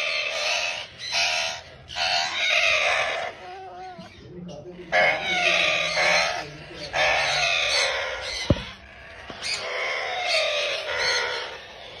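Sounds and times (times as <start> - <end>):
dull knock: 8.5 - 8.8.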